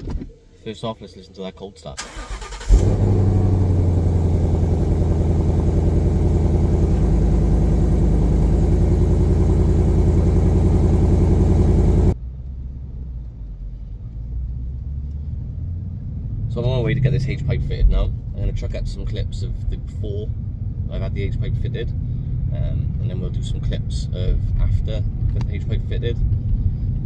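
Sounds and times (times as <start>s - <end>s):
low engine rumble: 0.0s - 27.0s
car engine idling: 2.0s - 12.2s.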